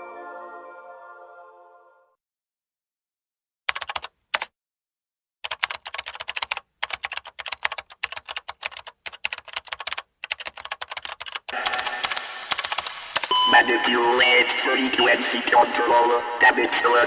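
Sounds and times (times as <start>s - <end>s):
keyboard typing: 3.7s - 4.5s, 5.4s - 13.4s.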